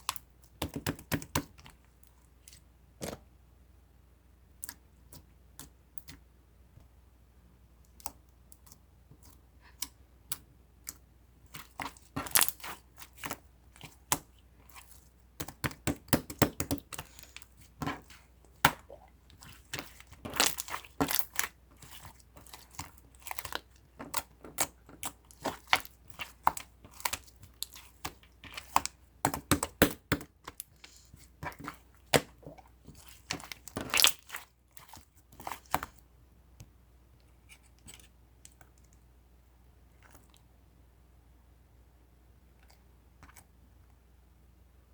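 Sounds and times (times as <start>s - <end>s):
slime squished by hand: 8.0s - 36.0s.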